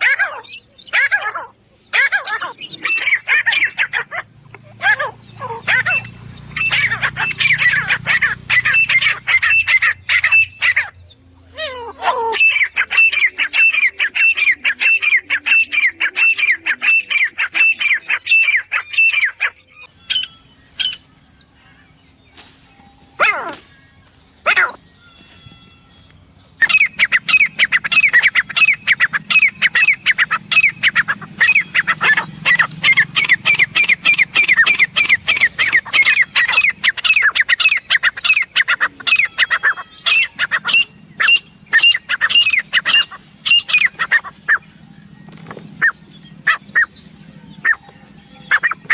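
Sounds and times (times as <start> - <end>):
francolin calling: 0.0 - 48.9.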